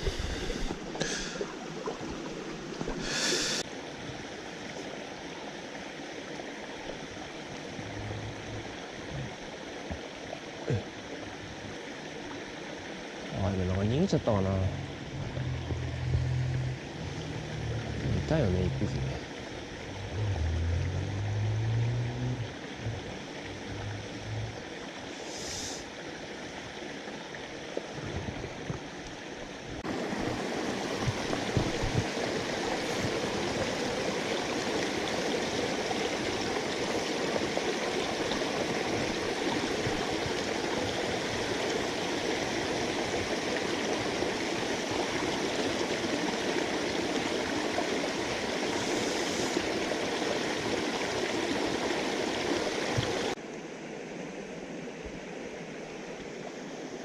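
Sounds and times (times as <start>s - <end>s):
stream rushing over rocks: 0.0s - 57.0s
low thumps: 14.7s - 18.9s.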